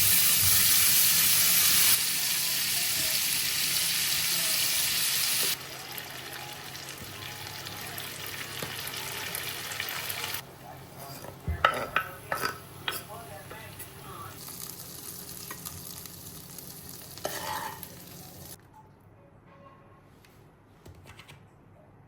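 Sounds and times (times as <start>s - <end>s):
food sizzling in a frying pan: 0.0s - 10.4s, 13.7s - 18.6s.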